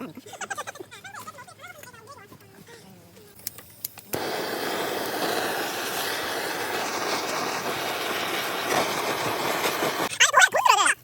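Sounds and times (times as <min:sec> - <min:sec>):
ribs sizzling on a grill: 0:04.2 - 0:10.1.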